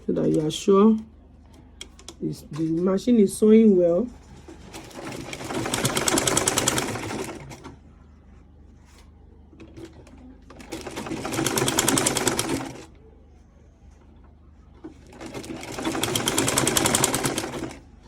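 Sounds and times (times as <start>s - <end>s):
sewing machine stitching: 4.3s - 7.7s, 9.7s - 12.9s, 14.8s - 17.8s.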